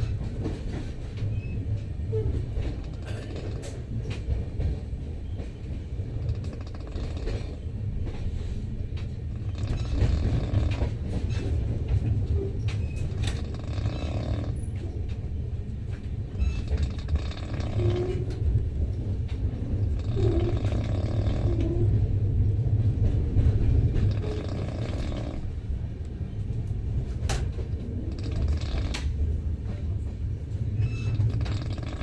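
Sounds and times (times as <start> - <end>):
moving train rumble: 0.0 - 32.0.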